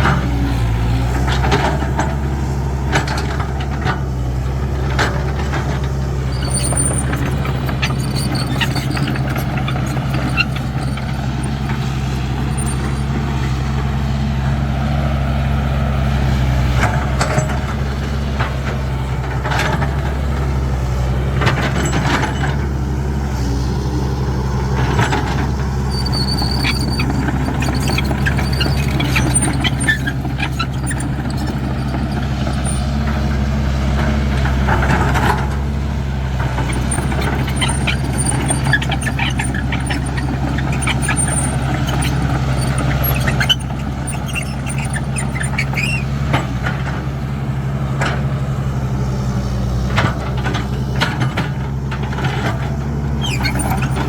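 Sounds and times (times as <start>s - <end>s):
excavator diesel engine running: 0.0s - 54.0s
high squeal: 6.2s - 13.5s, 21.4s - 33.1s, 36.7s - 46.2s, 53.2s - 54.0s.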